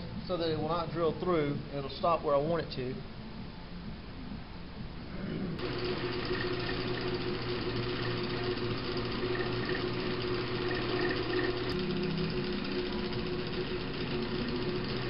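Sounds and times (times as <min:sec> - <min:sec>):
drill press motor hum: 0:05.6 - 0:15.0.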